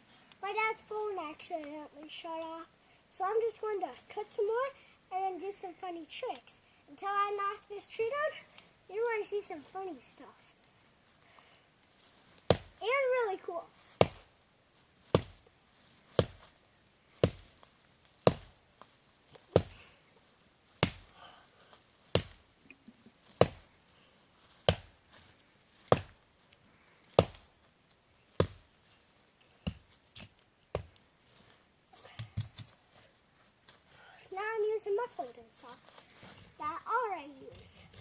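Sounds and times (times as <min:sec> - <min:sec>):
blade chopping tree trunk: 0:12.4 - 0:12.8, 0:13.9 - 0:14.3, 0:15.1 - 0:15.4, 0:16.1 - 0:16.5, 0:17.2 - 0:17.6, 0:18.2 - 0:18.6, 0:19.5 - 0:19.9, 0:20.8 - 0:21.2, 0:22.0 - 0:22.4, 0:23.2 - 0:23.7, 0:24.6 - 0:26.2, 0:27.2 - 0:27.5, 0:28.4 - 0:28.6, 0:29.6 - 0:31.0.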